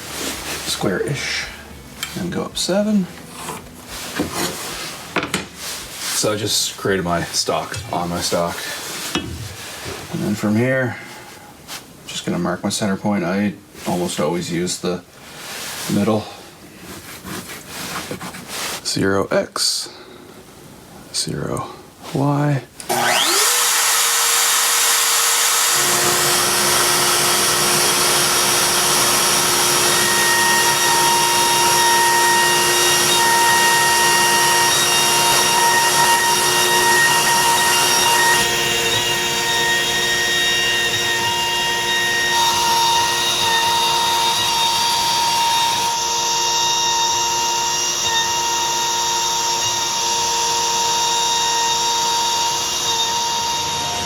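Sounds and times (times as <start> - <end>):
dust collector running: 22.9 - 44.0
router whining cutting wood: 22.9 - 54.0.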